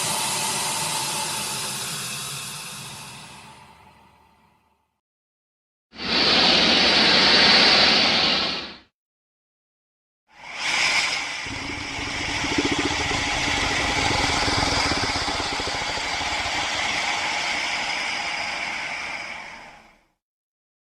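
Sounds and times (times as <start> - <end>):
crocodile growling and hissing: 11.5 - 19.6.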